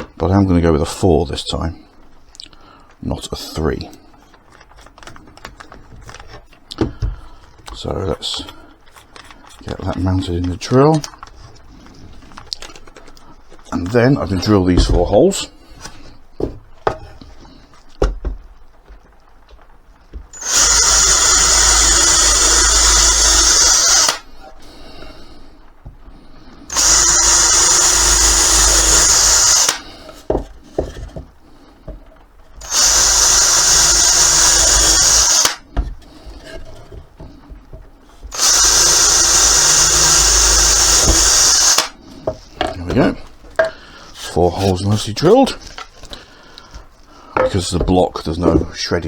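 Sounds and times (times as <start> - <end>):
power drill boring through wood: 20.4 - 24.3, 26.7 - 30.0, 32.6 - 35.8, 38.3 - 42.0
workpiece knocking and clattering: 30.2 - 32.6, 42.2 - 43.8, 46.8 - 48.9.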